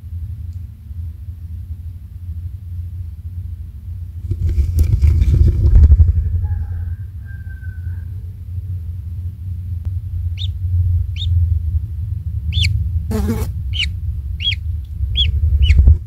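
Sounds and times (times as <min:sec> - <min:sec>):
low rumble: 0:00.0 - 0:16.0
thin high bird-like call: 0:12.5 - 0:15.8.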